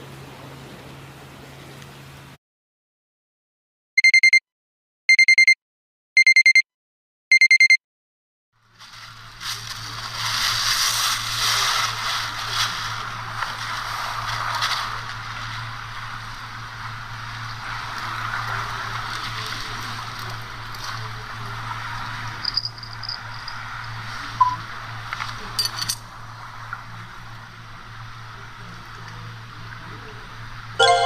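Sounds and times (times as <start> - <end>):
wind: 0.0 - 2.4, 8.6 - 31.0
electronic alarm beeps: 4.0 - 4.4, 5.1 - 5.6, 6.2 - 6.6, 7.3 - 7.8, 24.4 - 24.6
surf: 8.7 - 22.4.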